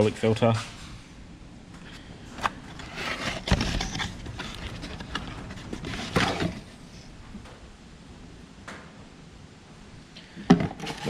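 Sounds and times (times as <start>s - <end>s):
boxes handled knocks and rustles: 2.3s - 7.6s.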